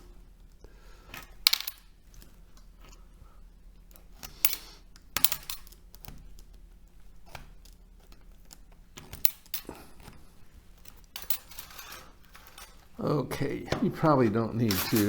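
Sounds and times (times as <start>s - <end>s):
metal laminations clinking: 9.0s - 15.0s.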